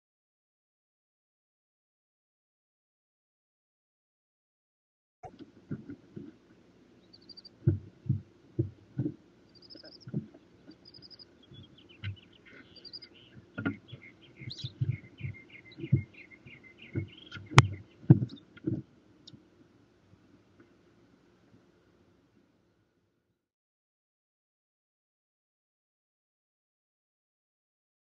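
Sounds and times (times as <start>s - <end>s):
small ticks: 7.1s - 19.4s.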